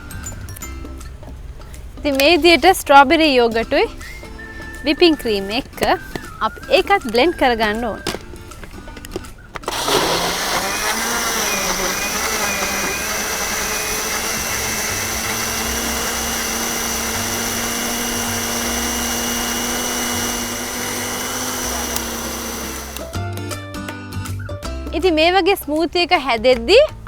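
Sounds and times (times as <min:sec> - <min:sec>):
electric blender running: 0:09.6 - 0:23.2.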